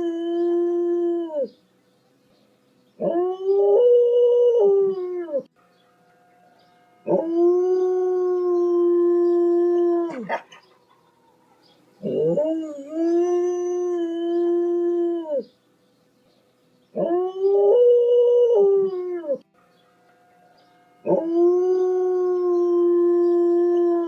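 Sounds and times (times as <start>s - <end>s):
dog howling: 7.0s - 15.4s, 21.0s - 24.0s.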